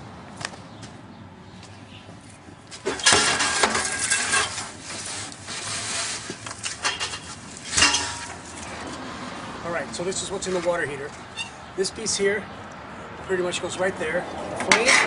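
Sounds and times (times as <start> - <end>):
metal parts clattering: 2.9 - 4.8, 6.6 - 8.5.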